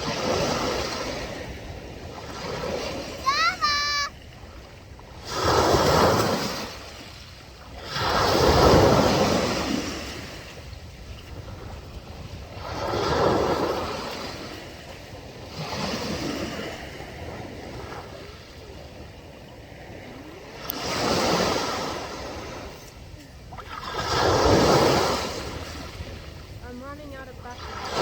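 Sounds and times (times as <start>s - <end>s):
sea waves washing in: 0.0s - 28.0s.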